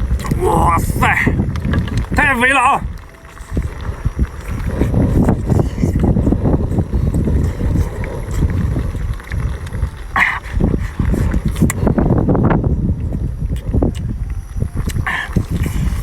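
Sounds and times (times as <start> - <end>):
chewing seafood: 0.0 - 16.0.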